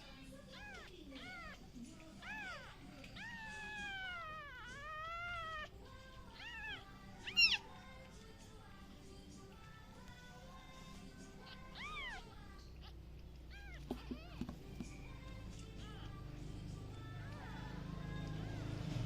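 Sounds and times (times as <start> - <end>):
kittens mewing: 0.4 - 8.2, 11.4 - 14.7.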